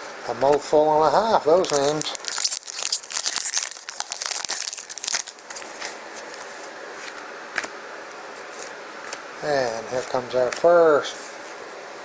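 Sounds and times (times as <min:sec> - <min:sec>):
plastic crinkling and rustling: 0:01.4 - 0:07.2.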